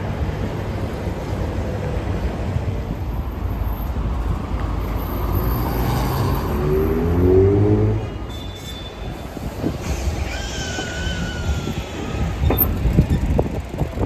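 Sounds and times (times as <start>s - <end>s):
rumble of passing vehicles: 0.0s - 14.0s
vehicle engine accelerating: 4.2s - 8.2s.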